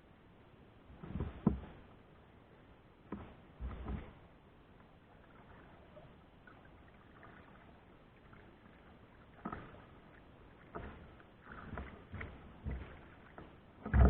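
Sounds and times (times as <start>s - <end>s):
faint water sounds: 0.0s - 14.0s
paddle splashes: 4.9s - 14.0s.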